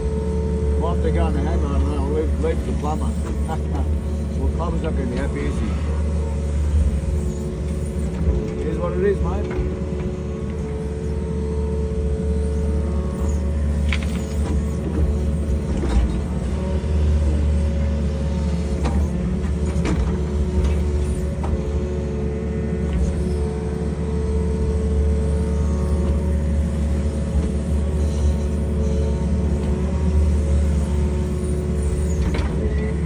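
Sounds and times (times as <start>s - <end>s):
excavator diesel engine running: 0.0s - 33.0s
hydraulic whine: 0.0s - 33.0s.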